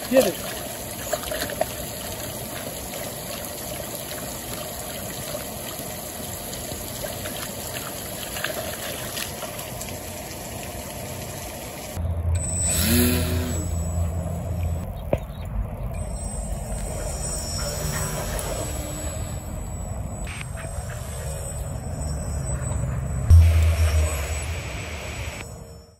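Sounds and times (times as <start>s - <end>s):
trickling lapping water: 0.0s - 12.0s
low hum: 11.8s - 25.9s
rising and falling whine: 12.0s - 25.9s.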